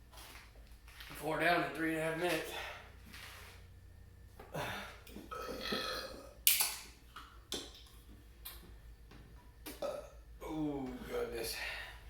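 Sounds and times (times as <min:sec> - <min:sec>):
man burping: 0:04.5 - 0:06.4, 0:09.7 - 0:10.8.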